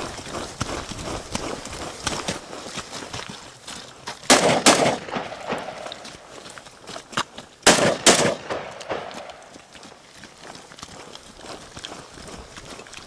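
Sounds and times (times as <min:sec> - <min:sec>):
rifle shots with echo: 0:04.3 - 0:06.2, 0:07.6 - 0:09.6.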